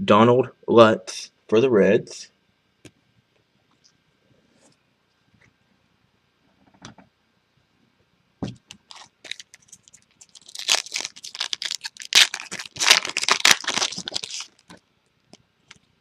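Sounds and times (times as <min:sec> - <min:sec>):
wrapper tearing and crinkling: 0:08.9 - 0:14.7.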